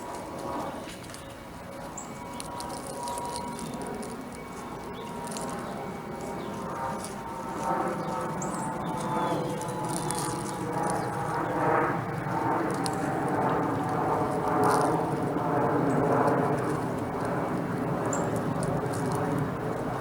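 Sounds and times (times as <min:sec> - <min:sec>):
outdoor background hum: 0:00.0 - 0:20.0.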